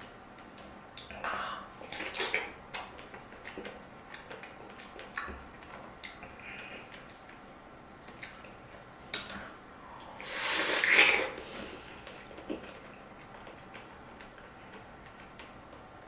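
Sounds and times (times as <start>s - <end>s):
person eating: 1.8s - 5.4s, 10.2s - 13.9s.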